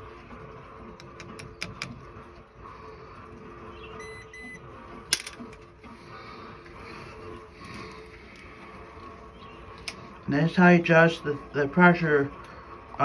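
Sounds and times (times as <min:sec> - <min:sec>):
steady low hum: 0:00.0 - 0:13.0
short high beeps: 0:04.0 - 0:04.6
clicks of metal parts handling: 0:05.1 - 0:05.6.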